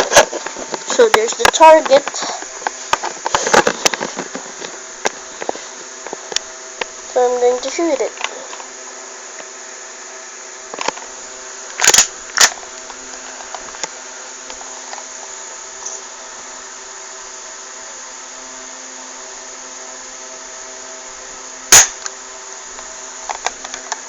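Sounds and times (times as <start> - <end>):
faint steady hum: 0.0 - 24.0
airsoft pistol snaps: 11.8 - 12.5, 21.7 - 22.1.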